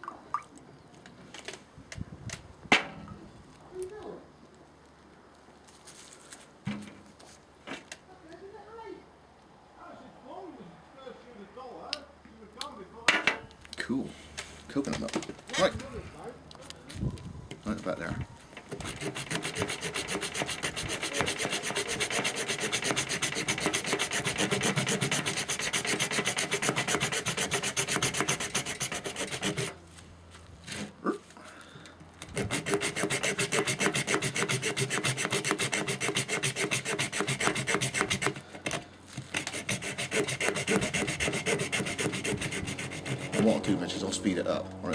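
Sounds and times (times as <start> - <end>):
saw cutting coconut shell: 18.6 - 29.8, 32.2 - 44.1.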